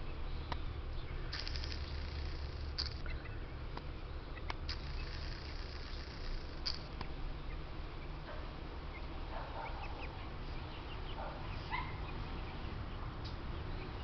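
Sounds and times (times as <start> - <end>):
low background noise: 0.0 - 14.0.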